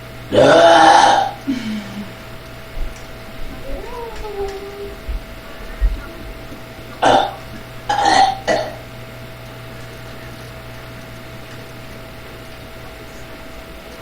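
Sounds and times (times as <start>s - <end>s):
person burping: 0.3s - 2.2s, 7.0s - 8.9s.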